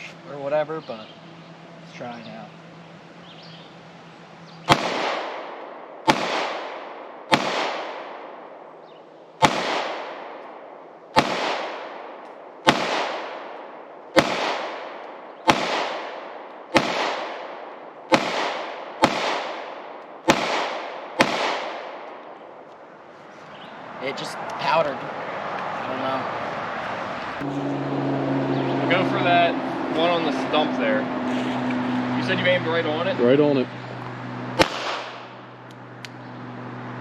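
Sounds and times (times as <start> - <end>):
gunshots with long echo: 4.6 - 22.6, 34.6 - 35.6.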